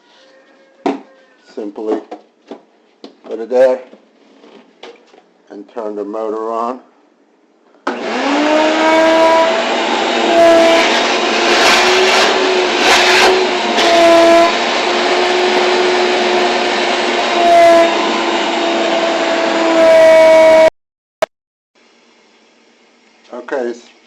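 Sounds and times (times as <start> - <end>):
wet dry vacuum whining: 7.8 - 20.7.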